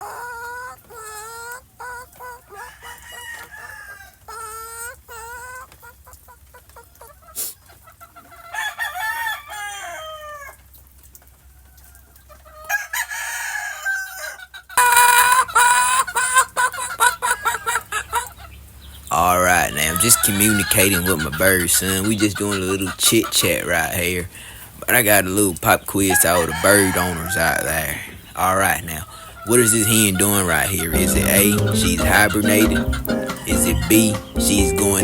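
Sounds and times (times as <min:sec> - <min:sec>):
hen clucking: 0:00.0 - 0:10.6, 0:11.6 - 0:35.0
hen squawking: 0:14.8 - 0:24.6, 0:25.5 - 0:35.0.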